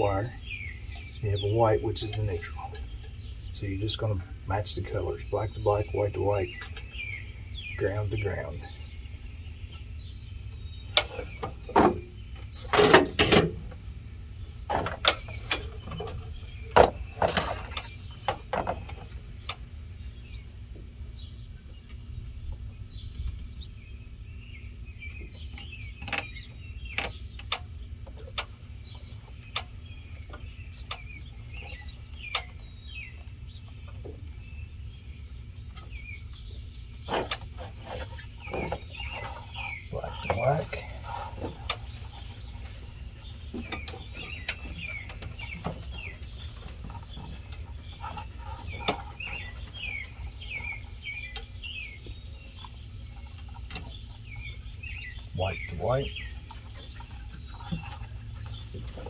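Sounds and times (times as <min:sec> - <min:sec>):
birds chirping faintly: 0:00.0 - 0:59.0
clicks and knocks of handling: 0:10.9 - 0:13.8, 0:14.7 - 0:19.7, 0:25.1 - 0:34.4.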